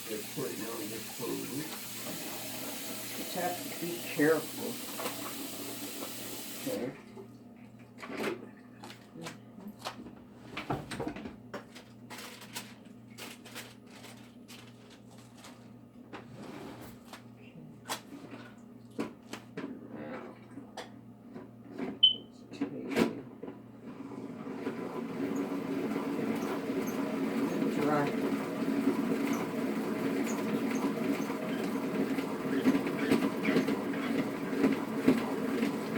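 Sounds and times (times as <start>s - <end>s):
kitchen tap running: 0.0s - 6.8s, 25.1s - 35.9s.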